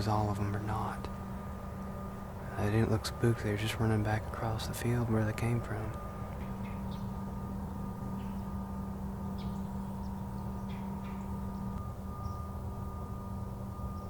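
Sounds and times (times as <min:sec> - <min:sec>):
steady higher tones: 0:00.0 - 0:14.0
steady low hum: 0:00.0 - 0:14.0
high bird chirps: 0:06.0 - 0:14.0.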